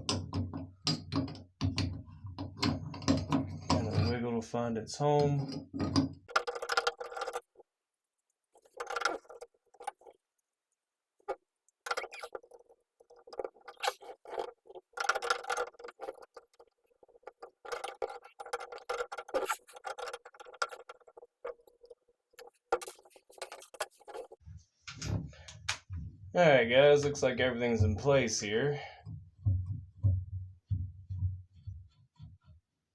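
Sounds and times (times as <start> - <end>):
faucet handle clicking and scraping: 5.2 - 7.5, 11.2 - 24.4.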